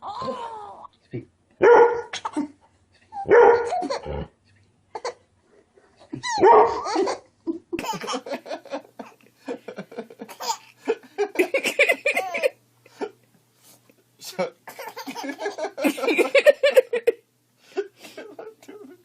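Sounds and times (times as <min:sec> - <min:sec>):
baby laughing: 0:00.0 - 0:00.9, 0:06.1 - 0:08.4, 0:10.2 - 0:12.6, 0:14.7 - 0:17.0
dog barking: 0:01.6 - 0:02.1, 0:03.3 - 0:03.9, 0:06.4 - 0:06.8.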